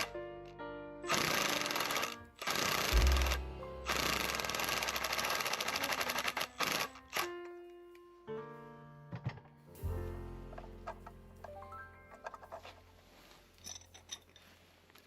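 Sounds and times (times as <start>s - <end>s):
heavy low hit: 2.9s - 3.9s.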